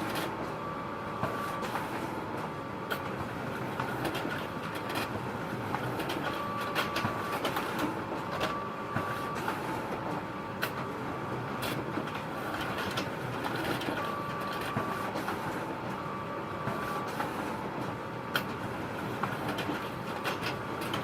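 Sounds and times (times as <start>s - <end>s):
photocopier whirring: 0.0s - 21.0s
paper mechanism clicks and clacks: 19.2s - 21.0s.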